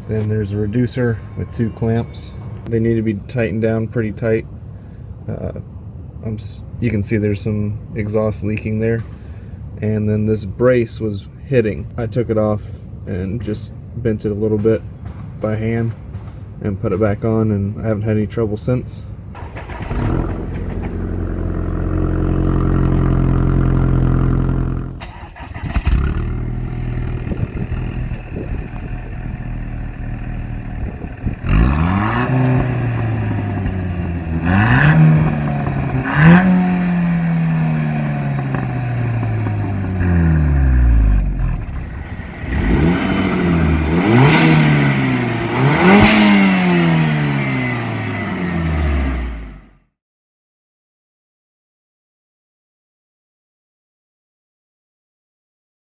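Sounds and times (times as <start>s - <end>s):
car engine idling and revving: 19.4s - 49.8s.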